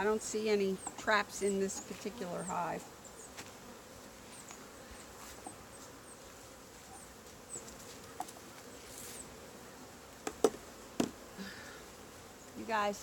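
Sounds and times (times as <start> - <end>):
bees buzzing: 0.0 - 13.0.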